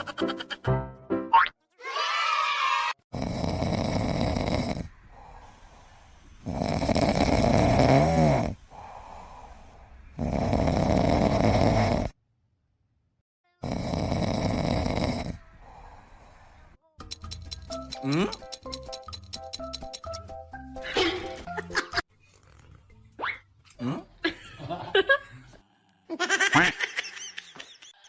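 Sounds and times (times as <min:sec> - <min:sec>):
pet snoring: 0:03.1 - 0:05.7, 0:06.4 - 0:12.2, 0:13.6 - 0:16.6
quiet breath out: 0:04.8 - 0:06.5, 0:08.5 - 0:10.1, 0:15.4 - 0:16.8.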